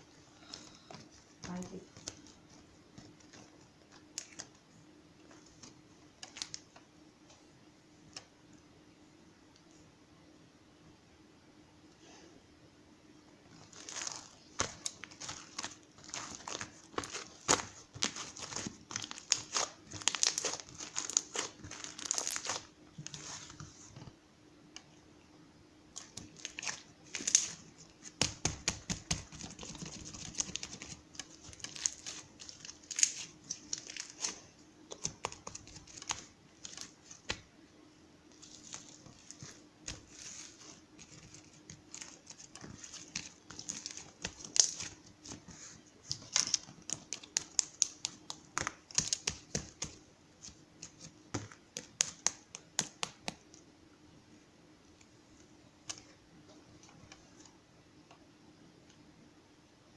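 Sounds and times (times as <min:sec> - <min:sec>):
crinkling and rustling handling: 0:00.0 - 0:08.6, 0:13.4 - 0:25.0, 0:25.9 - 0:53.7, 0:54.8 - 0:59.0
faint steady hum: 0:00.0 - 0:59.9.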